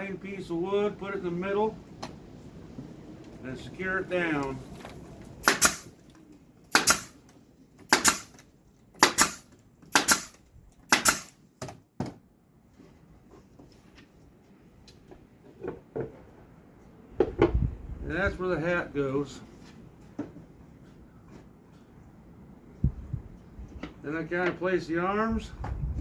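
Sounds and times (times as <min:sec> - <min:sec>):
brad nailer shots into wood: 0:05.4 - 0:06.0, 0:06.7 - 0:07.2, 0:07.9 - 0:08.4, 0:09.0 - 0:11.8.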